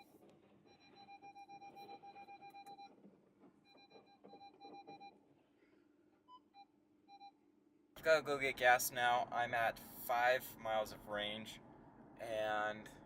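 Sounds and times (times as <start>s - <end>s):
rapid electronic warning beeps: 0.7s - 3.0s, 3.7s - 5.2s, 6.3s - 7.4s.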